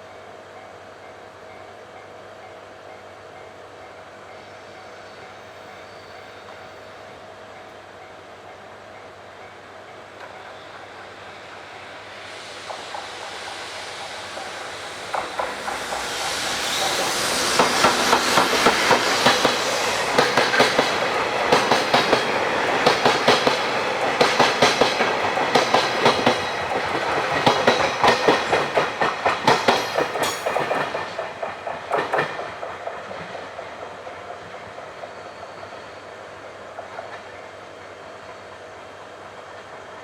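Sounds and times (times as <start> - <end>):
train wheels clicking over rail joints: 12.2 - 35.1.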